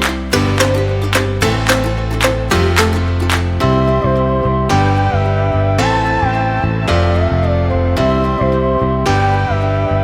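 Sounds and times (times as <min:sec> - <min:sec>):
gentle plucked instrumental music: 0:00.0 - 0:06.3.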